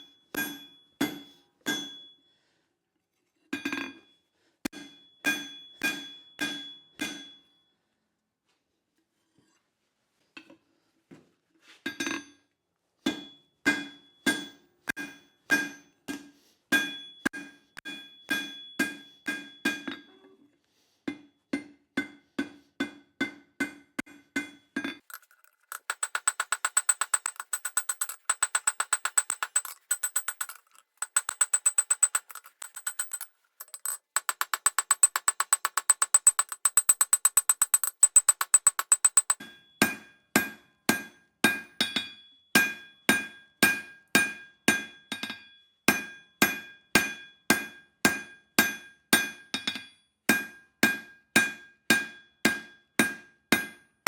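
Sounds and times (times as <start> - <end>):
hammer blows ringing on anvil: 4.7 - 7.4, 34.2 - 53.8.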